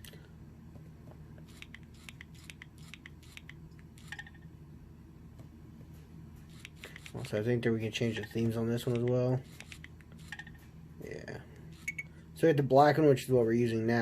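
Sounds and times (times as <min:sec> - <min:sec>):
low steady hum: 0:00.0 - 0:14.0
fingers tapping phone keys: 0:08.2 - 0:10.6.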